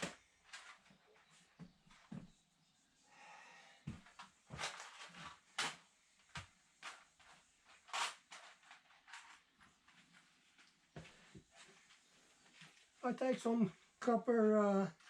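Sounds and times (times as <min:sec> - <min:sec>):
small parts clicking and knocking: 0:04.1 - 0:10.0.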